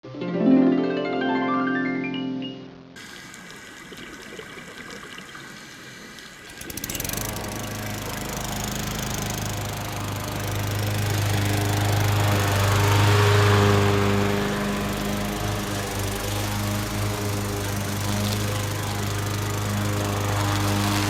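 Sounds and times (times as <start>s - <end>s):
small engine running: 6.4s - 21.0s.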